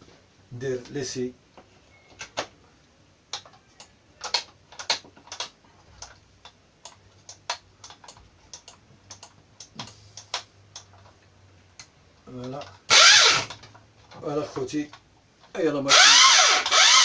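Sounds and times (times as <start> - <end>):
plastic parts clicking: 3.3 - 11.2.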